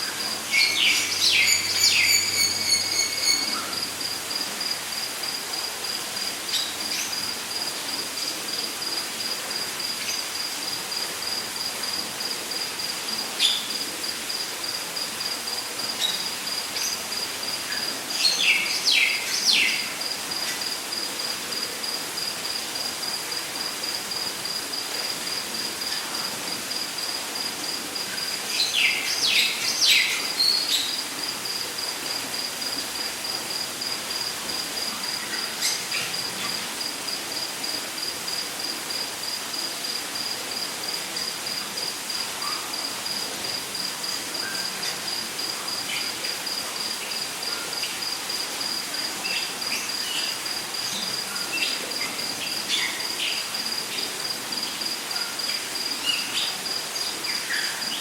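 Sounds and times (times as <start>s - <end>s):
background hiss: 0.0s - 58.0s
insect trilling: 0.6s - 5.4s
bird whistles: 1.3s - 3.7s.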